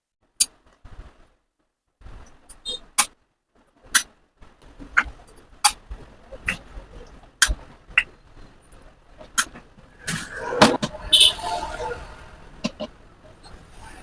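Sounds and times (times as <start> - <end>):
sharp clicks and knocks: 12.6 - 13.0.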